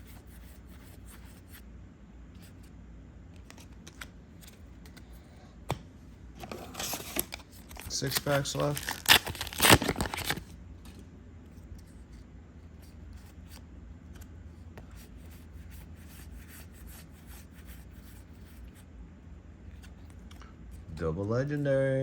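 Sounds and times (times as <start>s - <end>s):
cards clicking and rustling: 3.4s - 11.0s
foil pack tearing: 6.4s - 10.5s.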